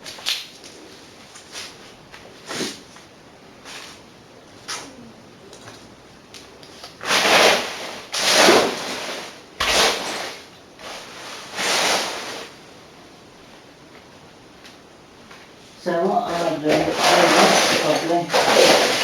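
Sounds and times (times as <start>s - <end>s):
rough scraping strokes: 7.0s - 12.6s, 16.3s - 19.0s.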